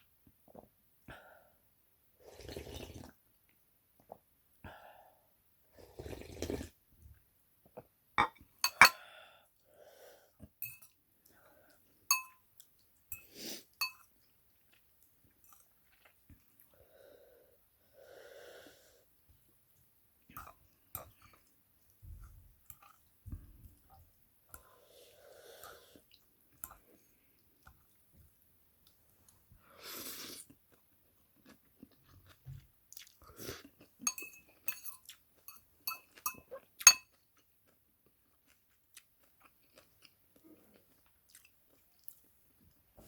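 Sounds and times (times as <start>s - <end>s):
slurping: 2.2s - 3.2s, 5.8s - 6.8s
utensils clinking against bowl: 8.2s - 9.0s, 12.1s - 12.4s, 13.1s - 14.1s, 34.0s - 37.1s
chewing: 22.7s - 23.1s, 30.5s - 43.0s
wheezy congested breathing: 24.6s - 26.1s.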